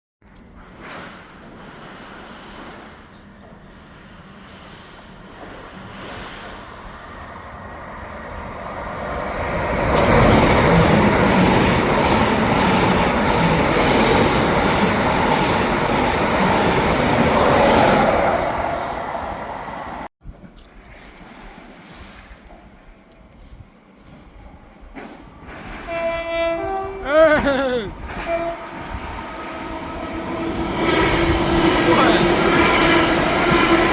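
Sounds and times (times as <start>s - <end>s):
electric train passing: 1.2s - 20.1s, 25.0s - 33.9s.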